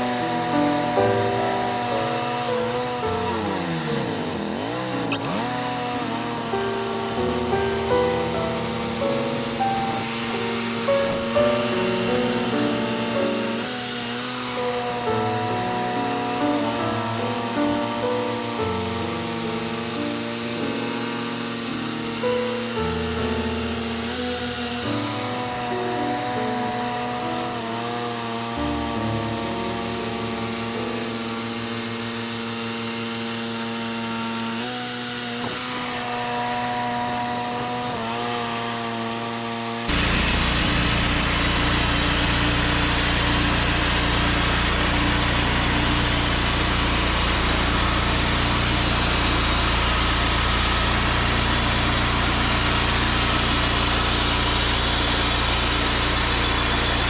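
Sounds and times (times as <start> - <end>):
background music: 0.0 - 32.1
band sawmill sawing timber: 0.0 - 57.0.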